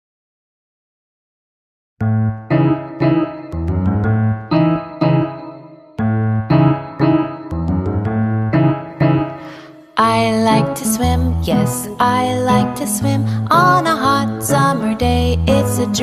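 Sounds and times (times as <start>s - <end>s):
piano music: 2.0s - 16.0s.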